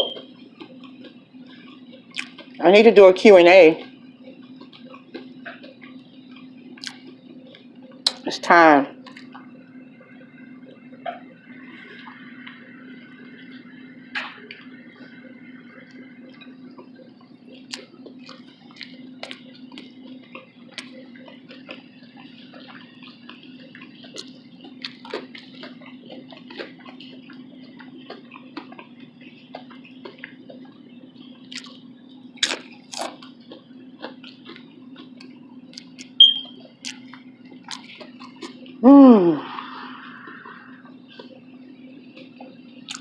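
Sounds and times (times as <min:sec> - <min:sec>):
wet chewing clicks and smacks: 0:00.0 - 0:02.6, 0:03.8 - 0:08.2, 0:09.0 - 0:09.5, 0:16.3 - 0:38.8, 0:40.3 - 0:43.0
steady low hum: 0:00.0 - 0:43.0.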